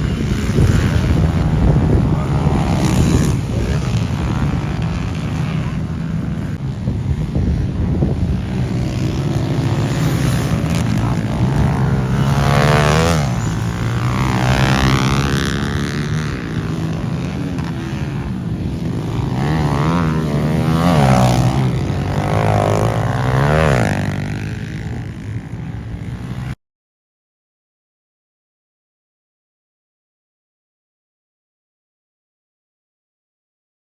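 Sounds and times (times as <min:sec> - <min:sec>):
pit bike engines revving: 0:00.0 - 0:26.6.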